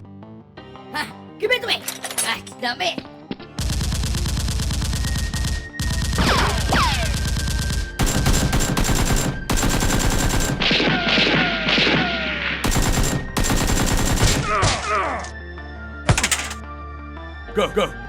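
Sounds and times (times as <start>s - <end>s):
automatic gunfire: 3.6s - 12.0s, 12.6s - 14.6s.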